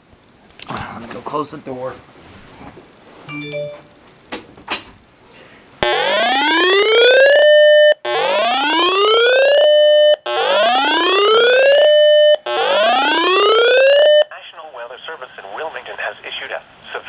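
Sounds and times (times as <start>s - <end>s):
rising electronic alert whoop: 5.8s - 14.2s.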